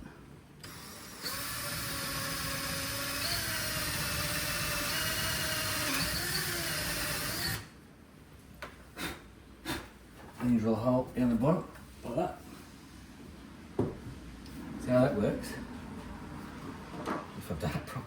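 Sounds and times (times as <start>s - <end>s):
power drill boring into wood: 0.6s - 7.7s.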